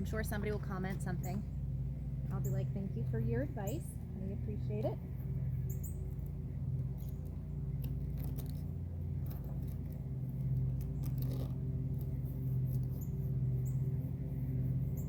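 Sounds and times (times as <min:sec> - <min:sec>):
steady low hum: 0:00.0 - 0:15.0
sealant tape crackling: 0:06.0 - 0:14.0.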